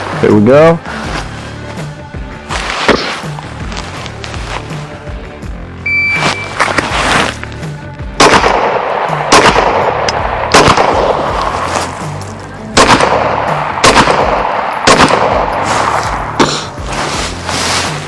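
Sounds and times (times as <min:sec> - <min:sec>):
pistol shots: 0:08.2 - 0:11.6, 0:12.8 - 0:16.8.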